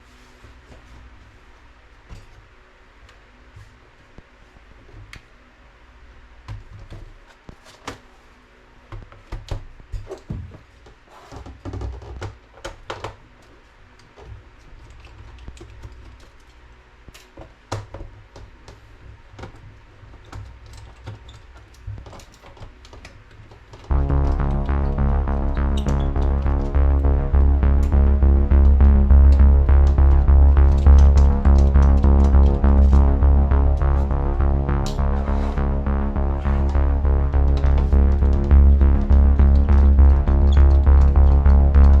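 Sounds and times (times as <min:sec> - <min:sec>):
electronic music: 0:23.9 - 0:42.0.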